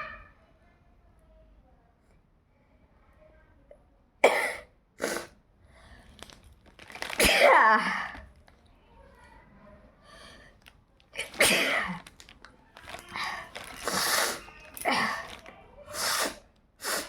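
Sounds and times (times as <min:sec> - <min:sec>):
person sneezing: 0:04.3 - 0:05.3, 0:11.2 - 0:12.0, 0:13.8 - 0:15.3, 0:15.9 - 0:17.0.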